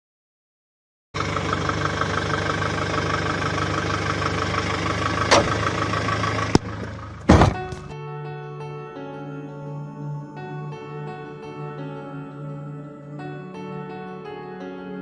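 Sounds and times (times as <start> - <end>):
diesel engine running: 1.2 - 7.9
sharp engine knocks: 5.2 - 5.8, 6.4 - 7.9.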